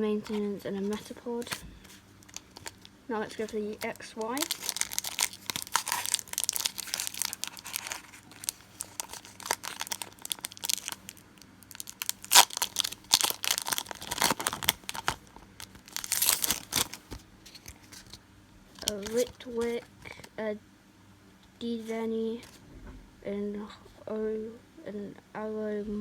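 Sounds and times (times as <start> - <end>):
foil wrapper crinkling: 2.2 - 18.2, 18.8 - 19.8.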